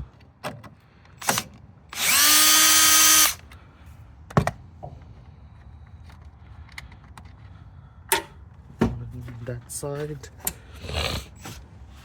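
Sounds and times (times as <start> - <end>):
power drill spinning: 1.2 - 3.4.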